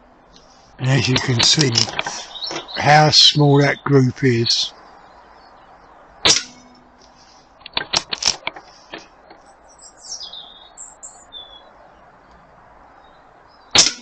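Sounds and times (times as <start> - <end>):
bird chirping: 0.2 - 8.0, 8.6 - 13.8
air gun shot: 6.2 - 6.6, 13.8 - 14.0.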